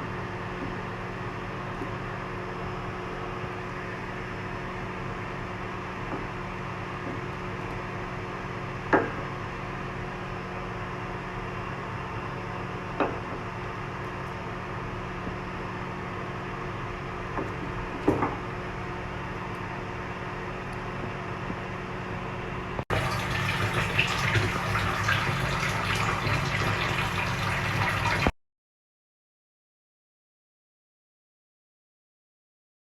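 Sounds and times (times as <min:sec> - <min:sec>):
rushing water-like noise: 0:22.9 - 0:28.3.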